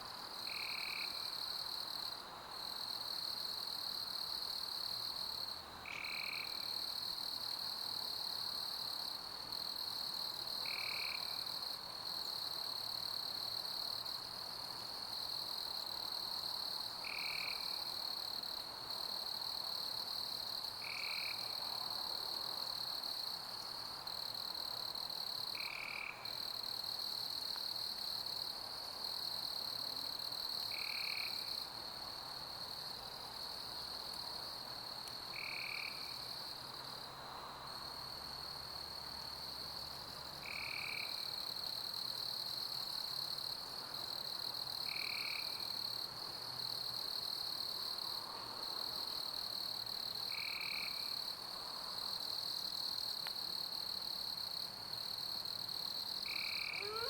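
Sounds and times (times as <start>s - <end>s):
crickets trilling: 40.4s - 57.0s.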